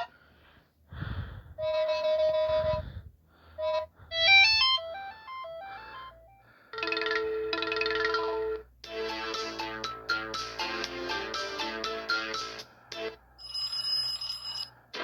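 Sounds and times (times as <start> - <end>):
electronic ringtone melody: 4.2 - 12.7, 13.4 - 14.7.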